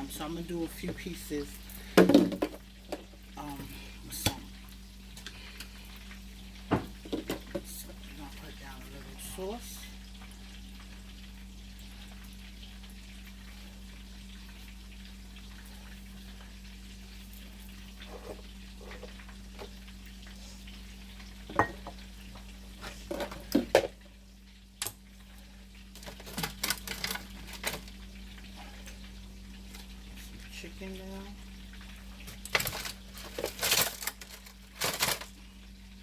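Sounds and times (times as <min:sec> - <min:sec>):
cutlets sizzling in oil: 0:00.0 - 0:36.0
utensils and dishes clattering: 0:26.0 - 0:27.9, 0:32.3 - 0:35.3.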